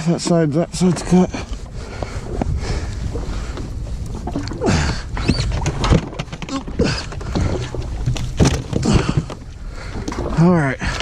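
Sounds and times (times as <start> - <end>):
water noise: 0.0 - 11.0
wind noise: 0.0 - 11.0
knocks and thumps in a cooler: 4.3 - 9.4.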